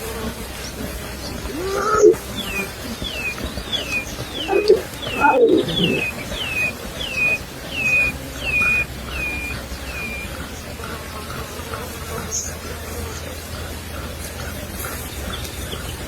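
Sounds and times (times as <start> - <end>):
low animal calls: 0.7 - 11.5
bird whistling descending notes: 1.5 - 10.3.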